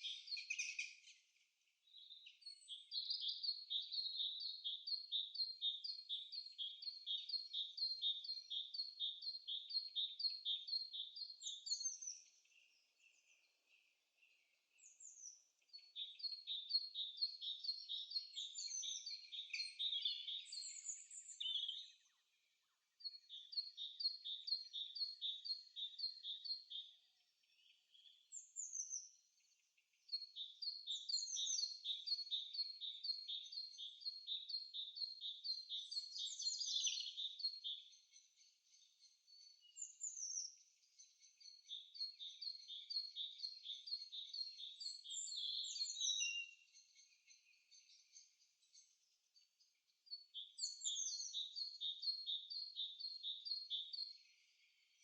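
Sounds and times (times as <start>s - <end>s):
songbird chirping: 0.0s - 55.0s.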